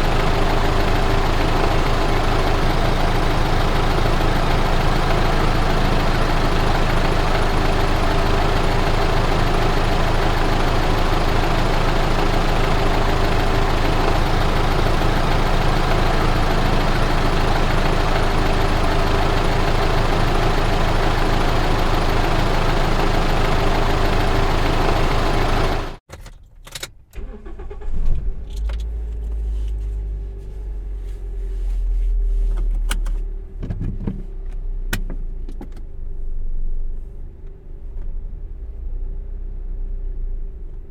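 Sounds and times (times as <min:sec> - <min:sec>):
car engine running: 0:00.0 - 0:40.9
low engine rumble: 0:00.0 - 0:40.9.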